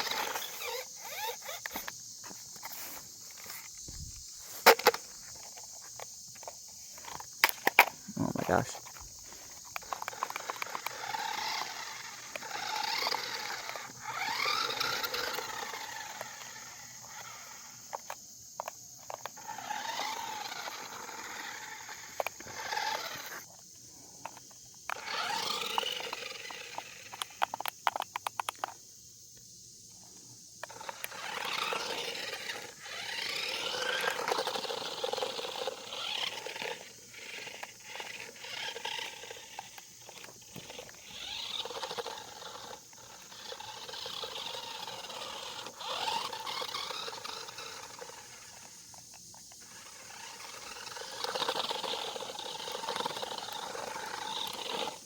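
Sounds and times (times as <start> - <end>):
toy car electric motor whining: 0.0 - 28.8, 29.4 - 55.0
rattle of clicks: 0.0 - 55.0.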